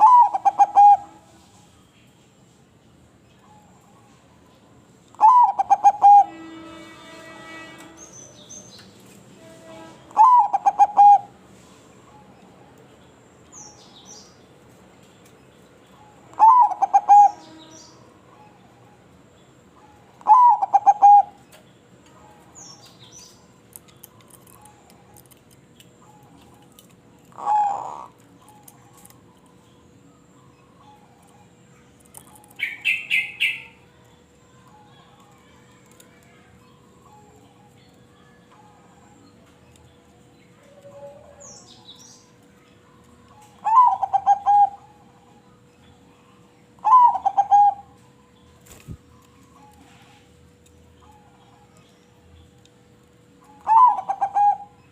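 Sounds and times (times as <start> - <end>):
dove cooing: 0.0 - 1.2, 5.2 - 6.3, 10.2 - 11.4, 16.3 - 17.5, 19.8 - 21.4, 27.3 - 28.8, 43.6 - 45.2, 46.8 - 47.9, 53.5 - 54.8.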